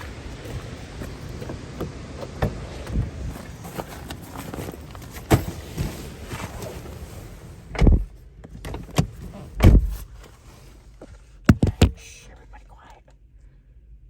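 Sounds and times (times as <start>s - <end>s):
dull thumps and knocks: 7.8s - 10.0s, 11.5s - 12.0s.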